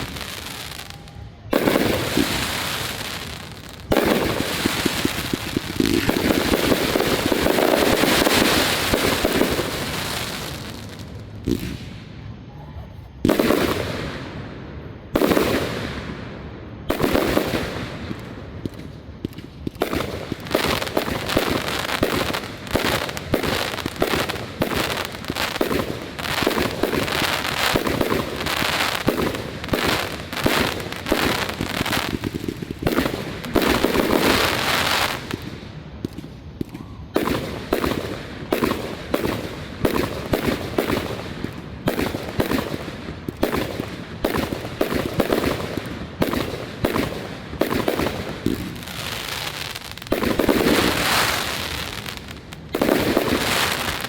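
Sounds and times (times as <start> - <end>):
fireworks crackling and popping: 0.0 - 14.4, 15.1 - 54.0.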